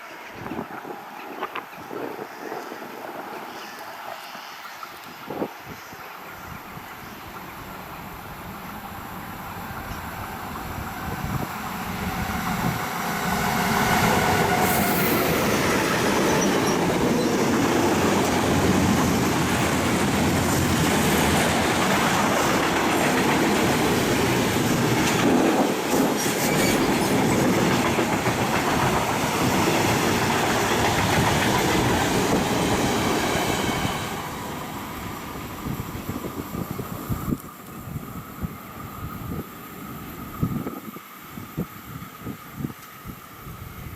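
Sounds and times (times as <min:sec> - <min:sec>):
train wheels clattering: 0:14.0 - 0:34.1.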